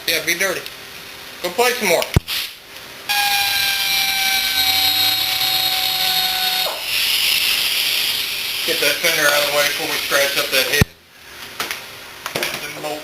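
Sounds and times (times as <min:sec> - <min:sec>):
power tool hissing and whining: 0:03.1 - 0:10.6.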